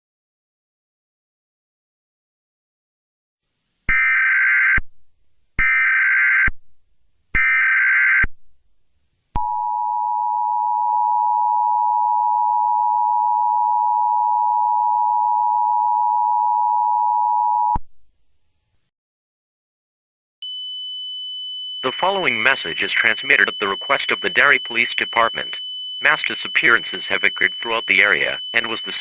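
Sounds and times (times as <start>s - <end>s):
data screech bursts: 21.8s - 29.0s
two-tone attention signal: 21.8s - 29.0s.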